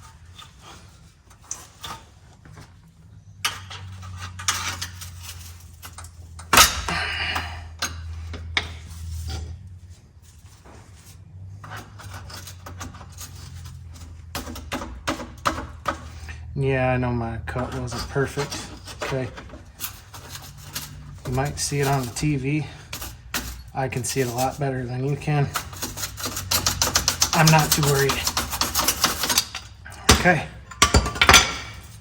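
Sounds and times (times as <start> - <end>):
metal clinks and knocks: 3.4 - 9.7, 10.3 - 16.5, 17.5 - 32.0
loud metal clank: 6.5 - 7.1.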